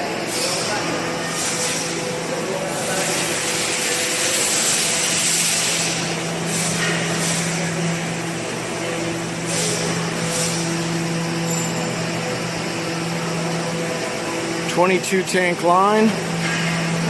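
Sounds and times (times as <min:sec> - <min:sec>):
low machinery hum: 0:00.0 - 0:17.0
loud airy hiss: 0:01.4 - 0:08.4.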